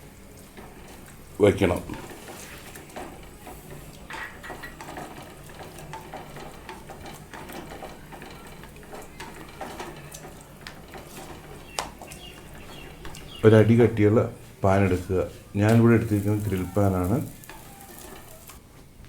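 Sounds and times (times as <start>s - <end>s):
spoon scraping a cooking pan: 0.2s - 18.6s.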